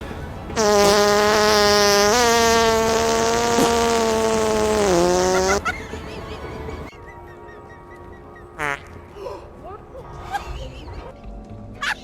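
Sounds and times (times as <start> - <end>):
long buzzing fart sound: 0.6 - 5.6.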